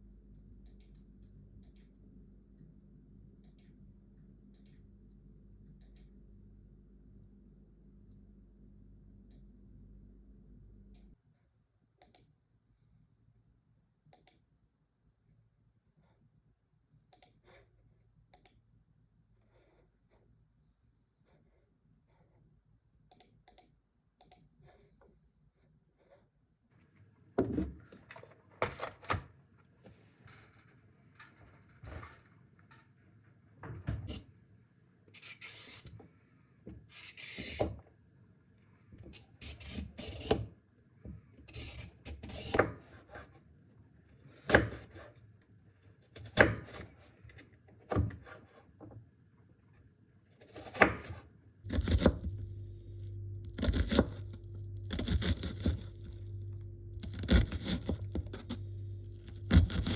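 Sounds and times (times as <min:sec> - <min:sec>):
appliance humming: 0:50.6 - 0:59.9.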